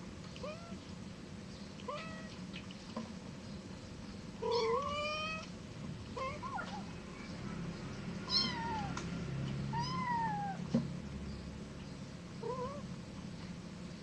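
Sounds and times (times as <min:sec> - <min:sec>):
cat meowing: 0:01.9 - 0:02.4, 0:04.4 - 0:05.5, 0:08.3 - 0:09.0, 0:09.7 - 0:10.6, 0:12.4 - 0:12.8.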